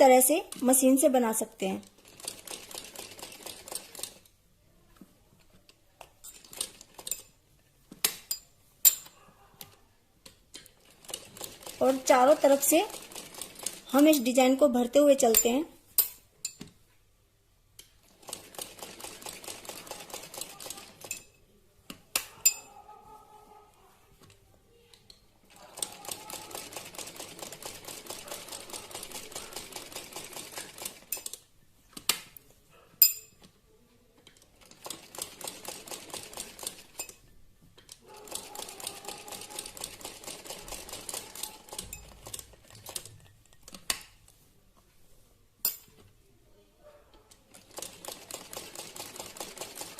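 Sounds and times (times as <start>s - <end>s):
sewing machine stitching: 1.8s - 4.2s, 10.6s - 14.3s, 18.1s - 21.2s, 25.5s - 31.4s, 34.3s - 37.1s, 37.8s - 43.9s, 47.3s - 49.9s
sewing machine clicks: 1.8s - 4.3s, 9.0s - 14.3s, 17.8s - 21.3s, 25.5s - 31.4s, 34.2s - 37.2s, 37.8s - 44.2s, 47.3s - 49.9s.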